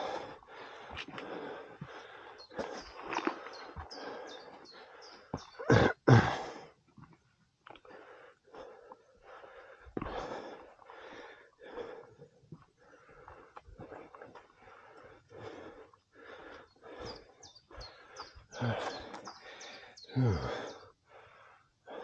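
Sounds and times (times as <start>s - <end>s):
person breathing hard: 0.0s - 6.8s, 7.8s - 22.0s.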